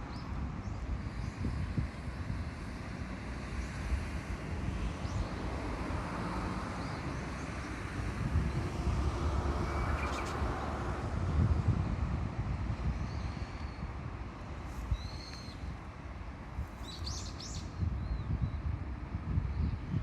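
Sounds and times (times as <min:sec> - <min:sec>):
road traffic rumble: 0:00.0 - 0:20.0
faint high bird chirps: 0:14.9 - 0:15.6.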